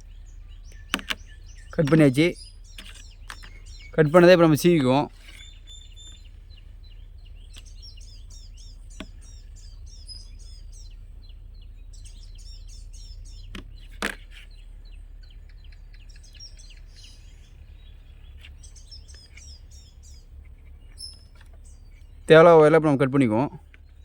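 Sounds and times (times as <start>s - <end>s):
small birds chirping: 0.0s - 24.0s
steady low hum: 0.0s - 24.0s
sharp clicks: 0.6s - 4.0s.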